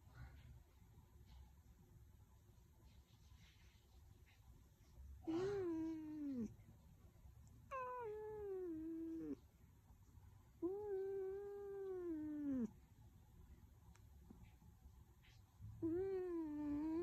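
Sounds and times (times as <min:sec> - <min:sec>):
cat snoring with whining tone: 0:10.7 - 0:12.7.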